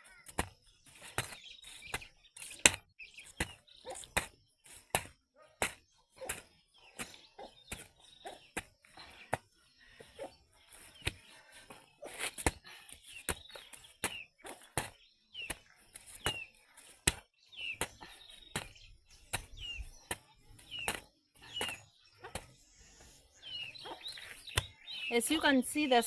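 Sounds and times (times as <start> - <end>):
bird chirping: 0.0 - 26.0.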